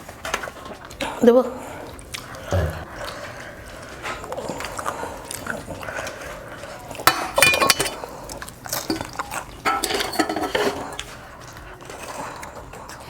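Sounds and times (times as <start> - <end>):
cutlery and dishes clinking: 3.1 - 12.9.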